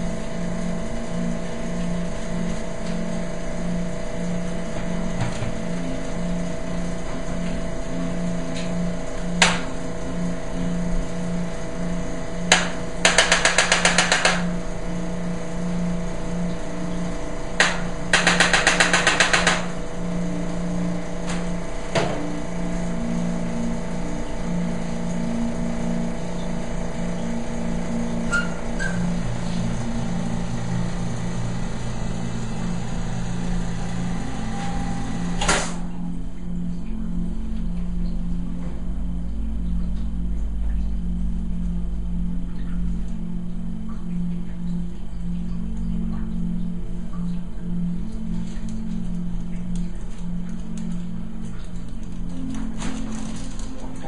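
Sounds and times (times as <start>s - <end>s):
pulsing mechanical hum: 0.0s - 54.0s
rapid clicking: 12.5s - 14.5s, 17.6s - 19.8s.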